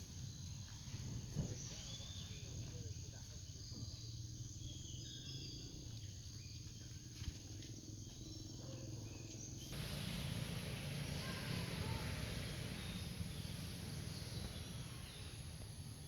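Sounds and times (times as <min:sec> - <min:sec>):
loud steady hiss: 0:09.6 - 0:16.0
steady low rumble: 0:09.6 - 0:16.0.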